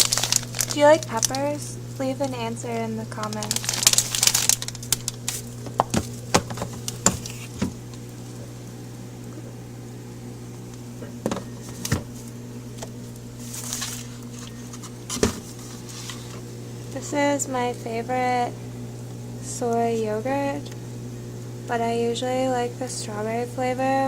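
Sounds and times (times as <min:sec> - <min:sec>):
packaging rustle: 0:00.0 - 0:01.4, 0:03.2 - 0:07.6, 0:13.4 - 0:16.4
refrigerator low hum: 0:00.0 - 0:24.0.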